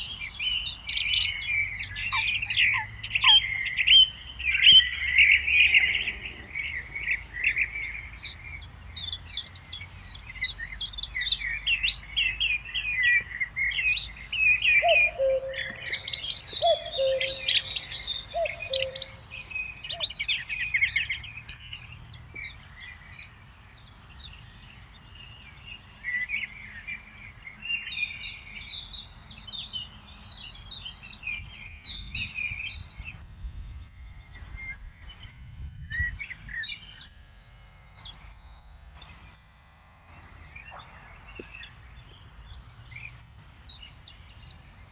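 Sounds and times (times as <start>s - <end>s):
songbirds singing: 0.0s - 44.9s
lower two-note bird call: 14.8s - 17.6s.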